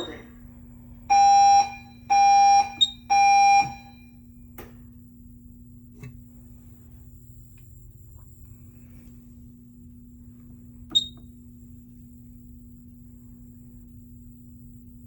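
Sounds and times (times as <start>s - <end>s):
fire alarm horn blasts: 1.1s - 4.3s.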